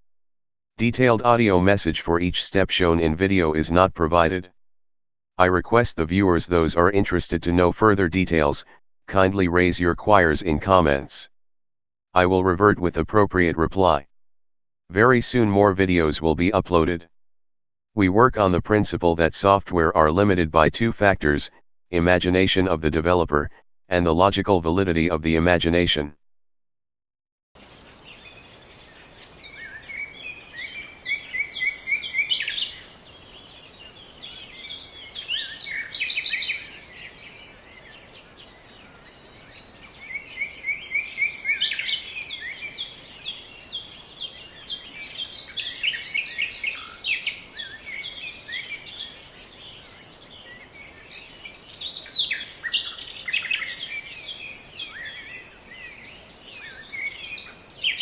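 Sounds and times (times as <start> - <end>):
birds chirping and trilling: 27.6 - 58.0.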